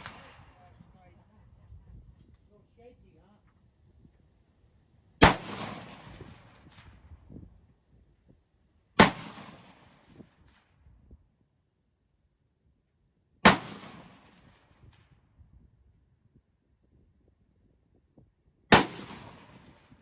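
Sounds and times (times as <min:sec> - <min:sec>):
gunshots with long echo: 0:00.0 - 0:00.6, 0:05.2 - 0:07.0, 0:09.0 - 0:10.1, 0:13.5 - 0:14.4, 0:18.7 - 0:19.8.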